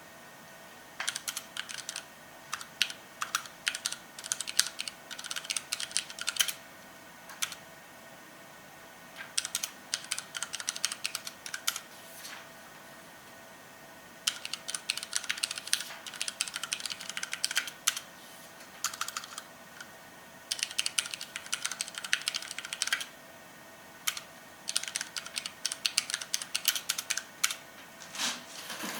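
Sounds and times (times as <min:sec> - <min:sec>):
mechanical keyboard typing: 0:01.0 - 0:06.6, 0:07.3 - 0:07.6, 0:09.2 - 0:11.9, 0:14.2 - 0:18.0, 0:18.8 - 0:19.9, 0:20.5 - 0:23.1, 0:24.0 - 0:27.6.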